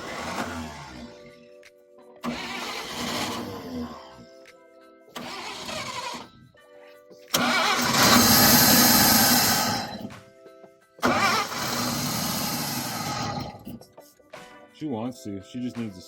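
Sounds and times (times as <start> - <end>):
car engine cranking: 0.0 - 1.3, 2.2 - 4.2, 5.2 - 6.3, 7.3 - 10.1, 11.0 - 13.8
faint background music: 0.0 - 16.0.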